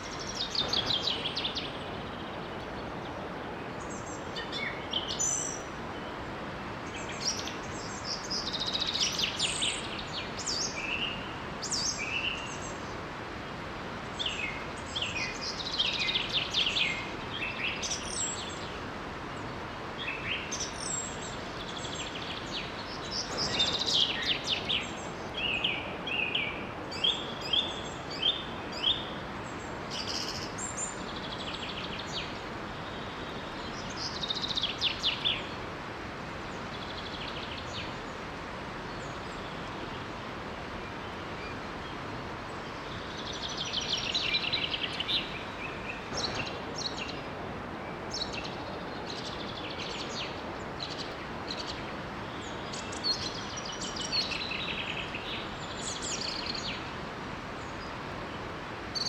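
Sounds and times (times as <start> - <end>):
birds singing and chirping: 20.0 - 29.1.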